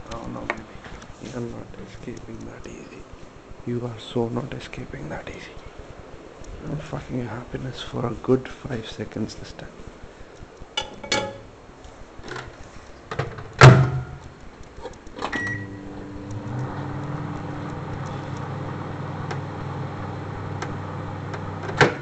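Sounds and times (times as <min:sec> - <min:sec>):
microwave door shutting: 0:15.2 - 0:15.8, 0:20.4 - 0:22.0
microwave oven humming: 0:15.3 - 0:22.0.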